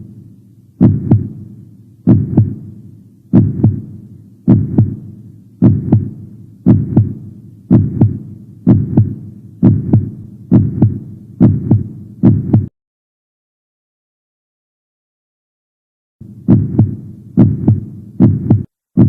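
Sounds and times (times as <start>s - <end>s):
heartbeat-like double thumps: 0.8s - 1.4s, 2.1s - 2.7s, 3.3s - 12.7s, 16.4s - 19.0s.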